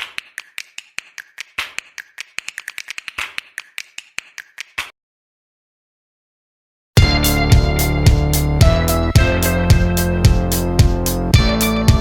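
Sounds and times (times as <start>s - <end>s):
rapid sharp taps: 0.0s - 4.9s.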